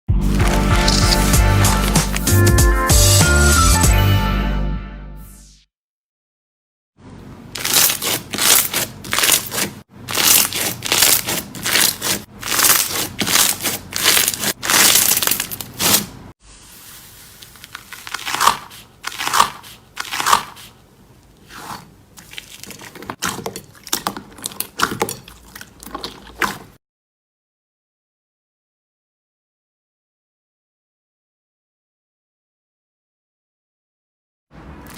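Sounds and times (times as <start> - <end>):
slime squelches: 0.2 - 2.3, 7.5 - 26.8
slime crackling and popping: 0.3 - 2.3, 7.6 - 16.1, 17.4 - 20.6.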